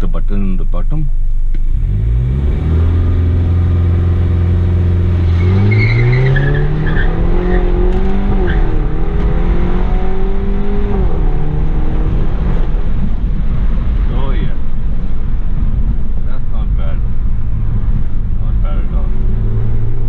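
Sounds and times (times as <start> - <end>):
car engine revving: 0.0 - 20.0
tyres squealing: 5.3 - 7.6.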